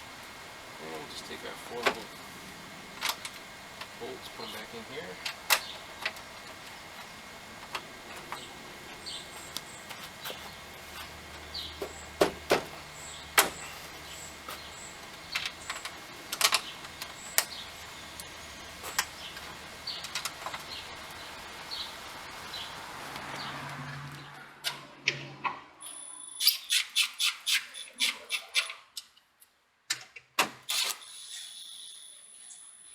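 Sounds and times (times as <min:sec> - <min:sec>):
small birds chirping: 0:00.0 - 0:24.4
bolts clicking and tapping: 0:03.0 - 0:22.4.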